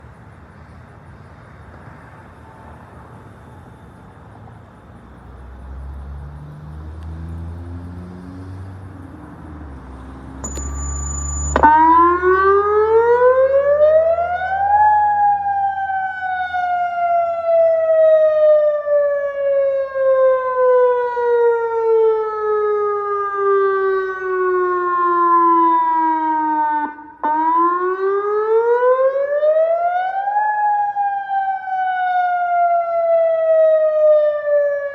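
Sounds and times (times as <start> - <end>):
tornado siren rising and falling: 5.4 - 34.9
short high beep: 10.4 - 11.8.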